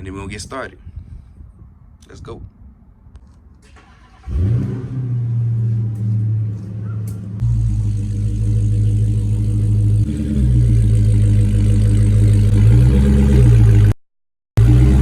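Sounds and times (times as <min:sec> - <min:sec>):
car engine running at low speed: 0:04.7 - 0:14.0.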